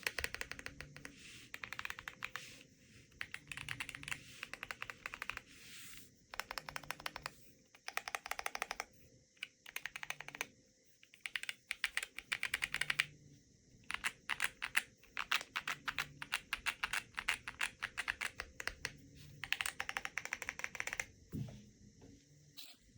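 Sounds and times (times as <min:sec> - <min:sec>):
mechanical keyboard typing: 0:00.0 - 0:02.5, 0:03.1 - 0:05.5, 0:06.3 - 0:10.5, 0:11.1 - 0:13.1, 0:13.9 - 0:21.1.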